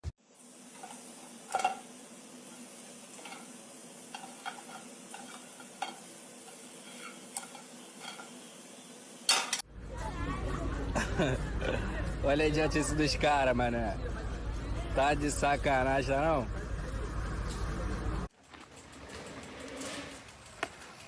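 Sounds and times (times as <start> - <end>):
steady hiss: 0.2 - 9.7, 18.4 - 21.0.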